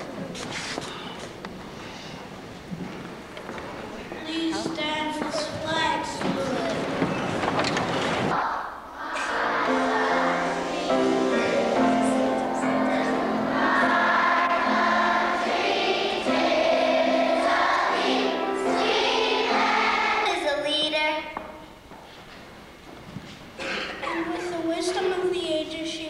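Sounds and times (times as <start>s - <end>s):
children's choir singing: 8.3s - 20.4s.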